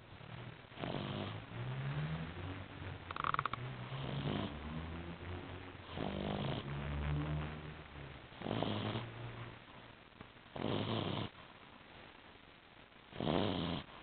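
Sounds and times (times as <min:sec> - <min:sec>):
pet snoring: 0:00.2 - 0:09.4, 0:10.5 - 0:11.4, 0:13.1 - 0:14.0.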